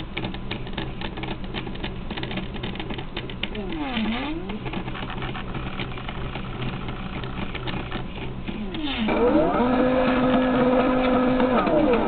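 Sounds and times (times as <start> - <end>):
stepper motors humming and ticking: 0.0 - 12.0
motor whine rising in pitch: 3.6 - 4.7, 8.6 - 12.0.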